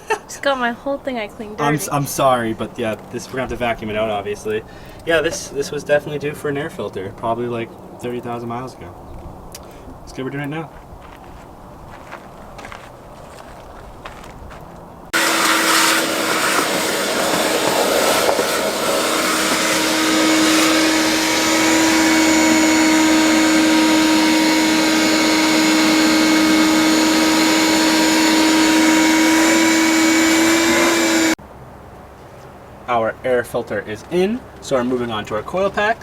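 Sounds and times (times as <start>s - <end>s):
shop vacuum whining: 15.1s - 31.4s.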